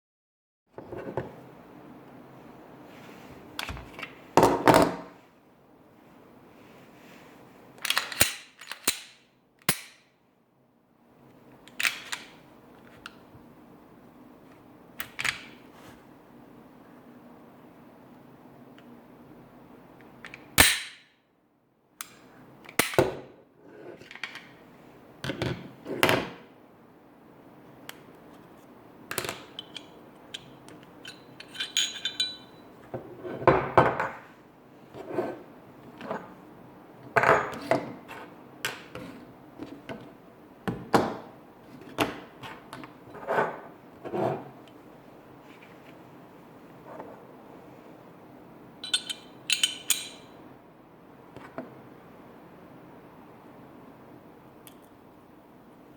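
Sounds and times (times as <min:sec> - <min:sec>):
metallic ring: 0:31.0 - 0:32.7, 0:48.8 - 0:50.3.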